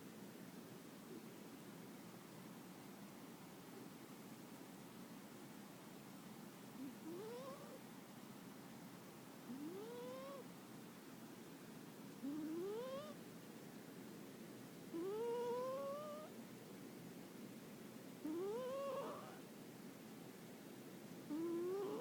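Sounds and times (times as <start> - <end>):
cat snoring: 6.8 - 7.8, 9.5 - 10.5, 12.2 - 13.2, 14.9 - 16.3, 18.2 - 19.4, 21.3 - 22.0.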